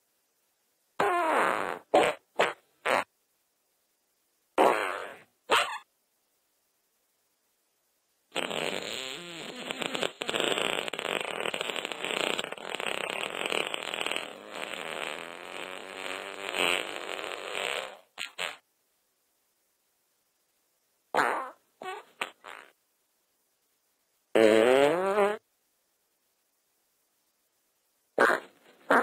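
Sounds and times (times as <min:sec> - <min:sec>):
fluttering fart: 0:01.0 - 0:03.1, 0:04.6 - 0:05.8, 0:08.3 - 0:18.6, 0:21.1 - 0:22.8, 0:24.4 - 0:25.4, 0:28.2 - 0:29.0
short fart toots: 0:01.0 - 0:03.1, 0:04.6 - 0:05.8, 0:08.3 - 0:18.6, 0:21.1 - 0:22.8, 0:24.3 - 0:25.4, 0:28.2 - 0:29.0.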